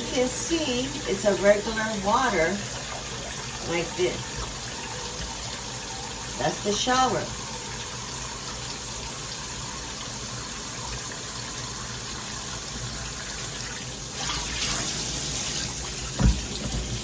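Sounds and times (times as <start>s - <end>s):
water spraying from shower head: 0.0s - 10.7s, 11.3s - 17.0s
short thump: 16.2s - 16.9s.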